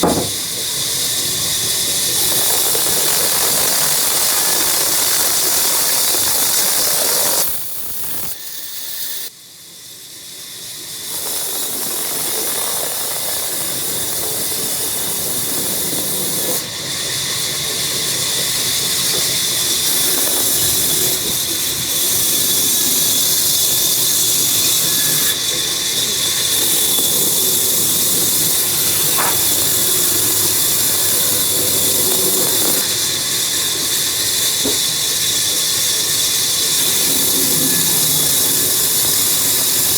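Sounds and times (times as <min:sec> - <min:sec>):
woodworking machine cutting wood: 0:00.0 - 0:00.6, 0:24.7 - 0:39.9.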